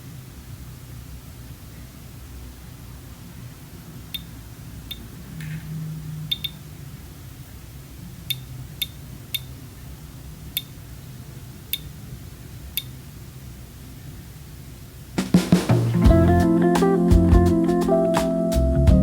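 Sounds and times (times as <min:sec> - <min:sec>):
low steady hum: 0:15.9 - 0:17.7.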